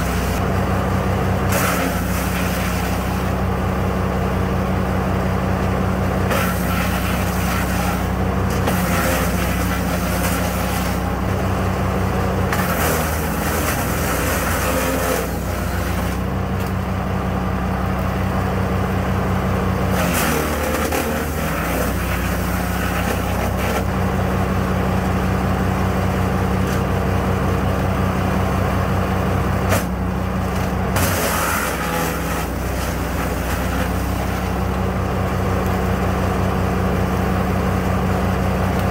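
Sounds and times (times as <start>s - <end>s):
wood chipper engine running: 0.0s - 38.9s.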